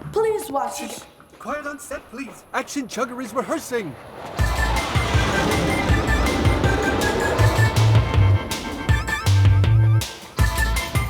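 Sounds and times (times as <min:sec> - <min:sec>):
action music with pulsing bass: 0:04.4 - 0:11.0.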